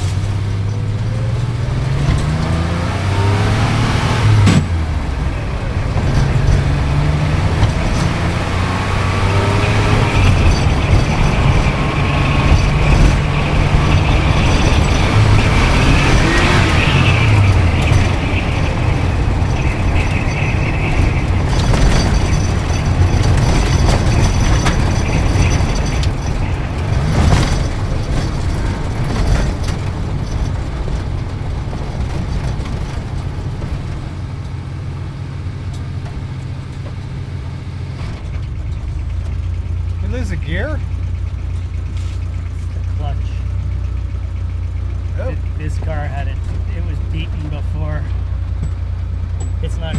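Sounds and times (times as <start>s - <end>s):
continuous rushing noise: 0.0s - 39.1s
sports car engine running hard: 0.0s - 49.9s.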